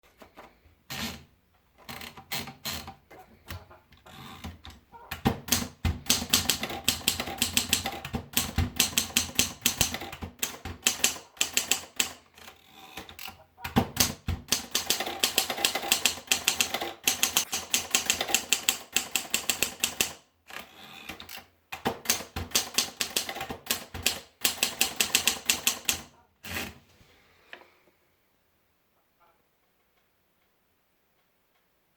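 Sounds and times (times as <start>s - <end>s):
manual typewriter key strikes: 5.3s - 12.2s, 13.9s - 20.2s, 21.8s - 26.6s.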